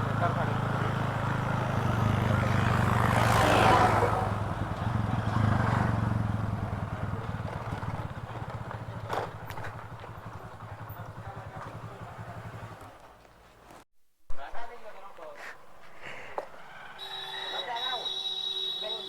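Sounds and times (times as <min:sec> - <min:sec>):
motorcycle engine idling: 0:00.0 - 0:13.1.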